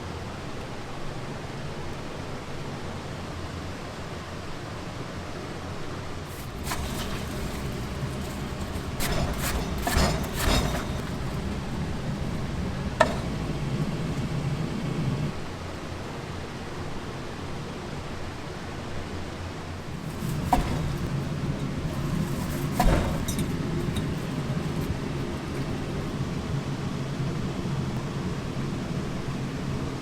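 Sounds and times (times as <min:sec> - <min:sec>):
clattering noises: 0:06.3 - 0:15.4, 0:19.8 - 0:27.2
low hum: 0:06.3 - 0:15.4.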